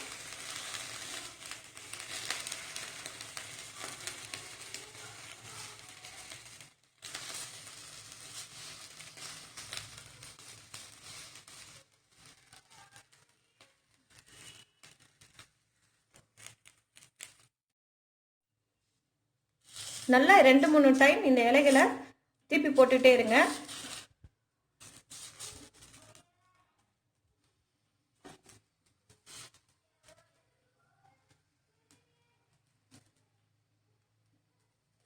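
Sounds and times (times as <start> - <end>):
leaves sizzling in a hot pan: 0.0 - 15.5, 19.6 - 24.1, 24.9 - 26.0.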